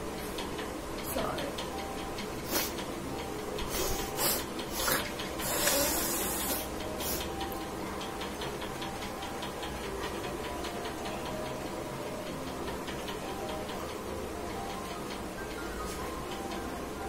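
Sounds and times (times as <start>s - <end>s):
person sniffing through nose: 2.5s - 2.8s, 3.7s - 7.2s.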